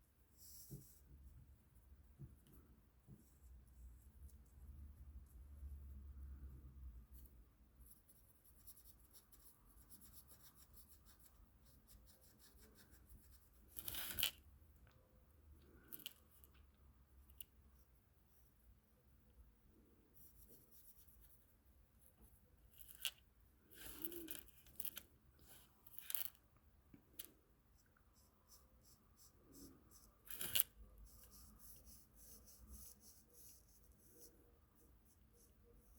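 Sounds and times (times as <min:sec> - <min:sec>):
colouring scratching on paper: 0:07.8 - 0:14.3, 0:28.1 - 0:35.9.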